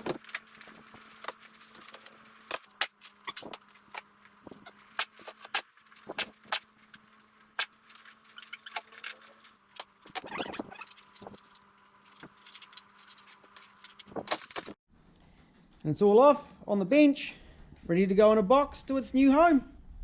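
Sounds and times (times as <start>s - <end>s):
wiring harness rattling: 0.0s - 14.8s.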